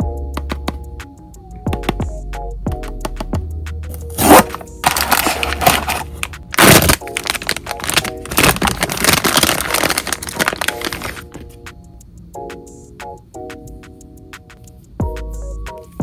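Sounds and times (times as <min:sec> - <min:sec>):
soft background music: 0:00.0 - 0:16.0
packaging crinkling: 0:04.0 - 0:11.4
packaging tearing: 0:04.0 - 0:11.4.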